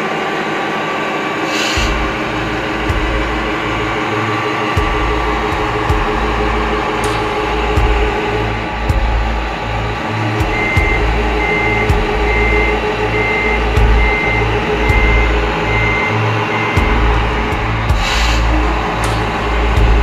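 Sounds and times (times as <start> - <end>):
machinery whirring: 0.0 - 20.0
reversing beeper: 10.0 - 19.7.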